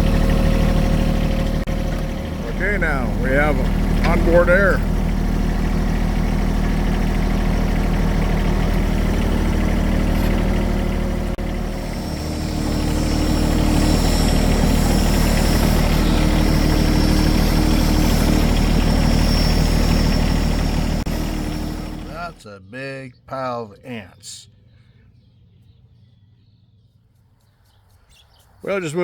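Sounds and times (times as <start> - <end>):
air compressor running: 0.0 - 22.4.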